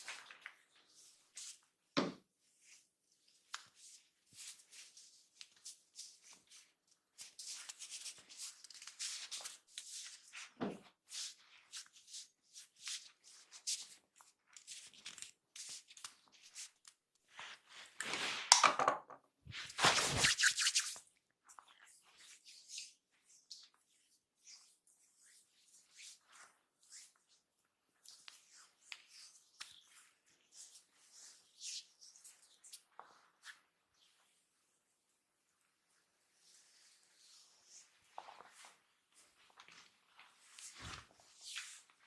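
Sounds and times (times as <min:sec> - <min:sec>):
hands rubbing on skin and hair: 0:19.5 - 0:21.0.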